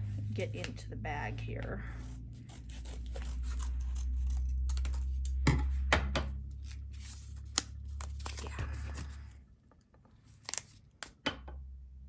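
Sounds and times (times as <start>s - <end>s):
low steady hum: 0.0s - 10.6s.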